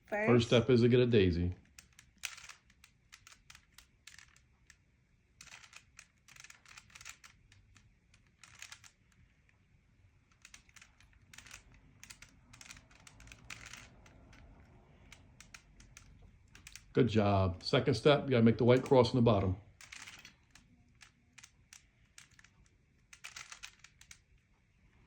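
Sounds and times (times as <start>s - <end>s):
plastic puzzle cube clicking: 1.6s - 9.6s, 10.2s - 16.9s, 19.8s - 24.5s.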